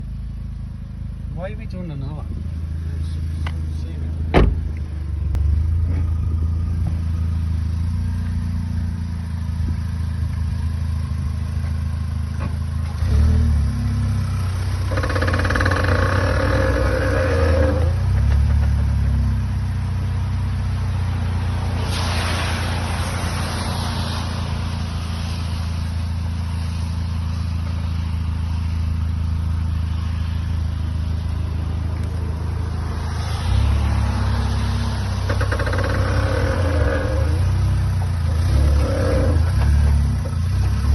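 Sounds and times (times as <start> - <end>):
car engine running: 0.0 - 22.0, 22.6 - 40.9
thump: 4.3 - 4.8
wheels creaking and knocking: 14.5 - 19.2, 33.0 - 40.9.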